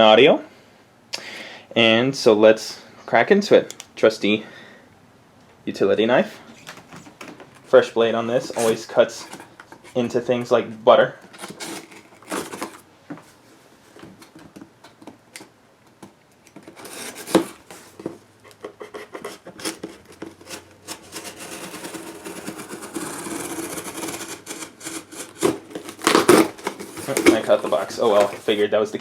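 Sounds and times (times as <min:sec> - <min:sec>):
knife cutting cardboard: 0:08.5 - 0:09.4, 0:16.7 - 0:28.6.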